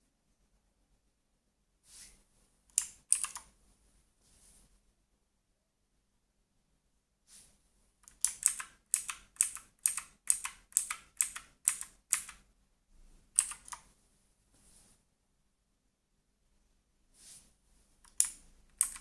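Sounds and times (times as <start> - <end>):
mechanical keyboard clicks: 2.8 - 3.5, 8.0 - 12.4, 13.4 - 13.8, 18.1 - 19.0.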